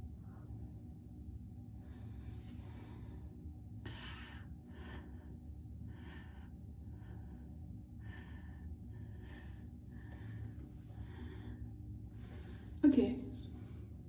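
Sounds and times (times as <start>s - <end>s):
steady low hum: 0.0s - 14.0s
person breathing heavily: 1.8s - 12.8s.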